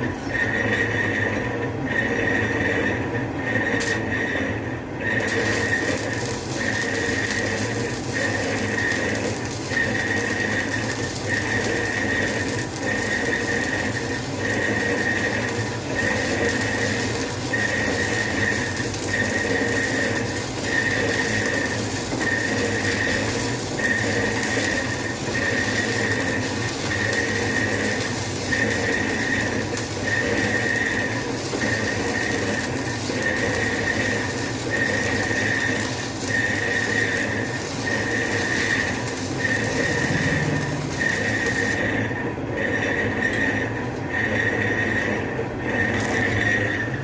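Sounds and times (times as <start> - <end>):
low machine hum: 0.0 - 47.0
pulsing high machine tone: 0.3 - 47.0
hiss: 5.3 - 41.8.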